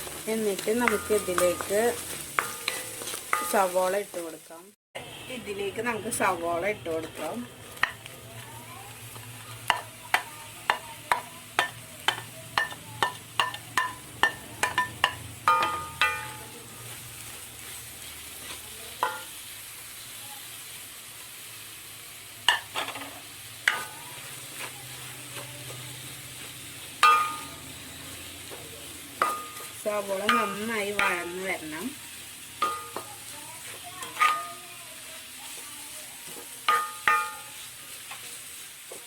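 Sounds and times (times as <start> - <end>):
onions sizzling faintly: 0.0 - 39.0
spoon clinking on pan: 10.7 - 16.5, 19.0 - 19.3, 27.0 - 27.6, 36.7 - 37.6.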